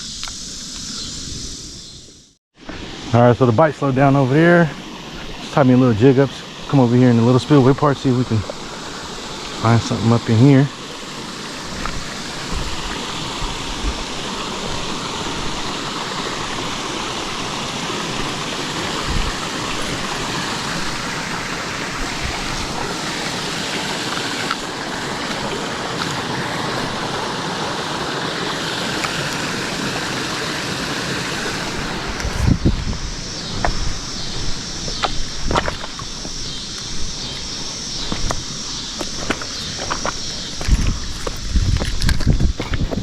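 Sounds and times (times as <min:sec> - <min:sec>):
water rushing over spillway: 0:02.8 - 0:36.2.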